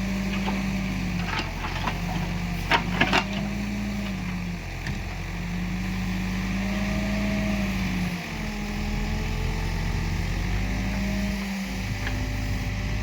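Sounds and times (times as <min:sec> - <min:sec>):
diesel engine under load: 0:00.0 - 0:13.0.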